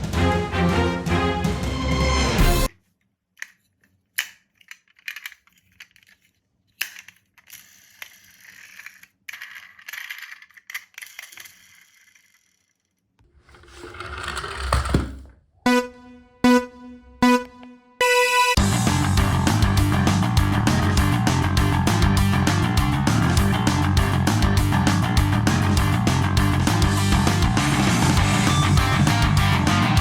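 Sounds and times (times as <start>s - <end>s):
plastic toy clicks: 3.4s - 13.0s
toy wheels rattling: 3.4s - 15.2s.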